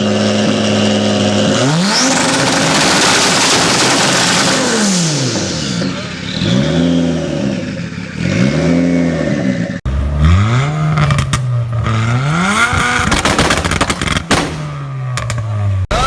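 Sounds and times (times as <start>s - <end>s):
car engines revving: 0.0s - 16.0s
exhaust pops and crackles: 10.9s - 15.7s.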